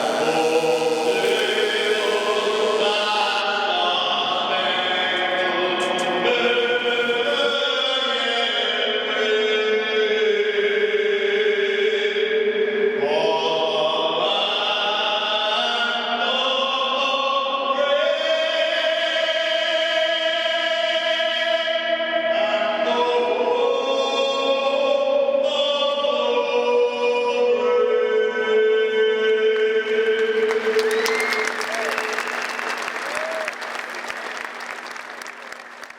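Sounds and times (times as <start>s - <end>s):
choir singing held chords: 0.0s - 17.1s.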